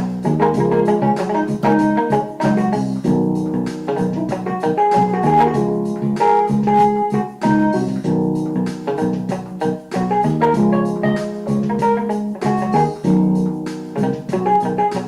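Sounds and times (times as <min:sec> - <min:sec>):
organ-like keyboard chords: 0:00.0 - 0:15.0.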